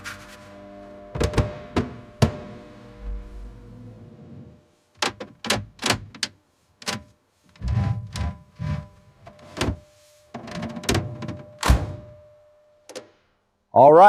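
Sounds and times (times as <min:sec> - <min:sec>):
deep low swell: 0:00.8 - 0:04.6.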